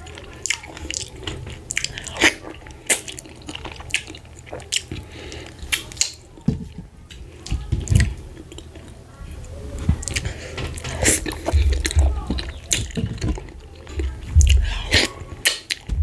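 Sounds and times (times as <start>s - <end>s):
wet sticky eating smacks: 0.1s - 6.2s, 10.0s - 15.9s
dull low thuds: 11.4s - 14.9s.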